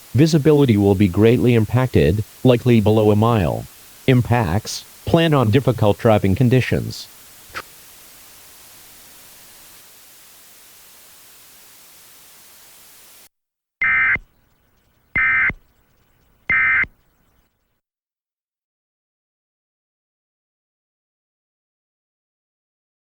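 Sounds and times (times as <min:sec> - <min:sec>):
steady hiss: 0:00.0 - 0:13.3
digital data bursts: 0:13.8 - 0:17.6.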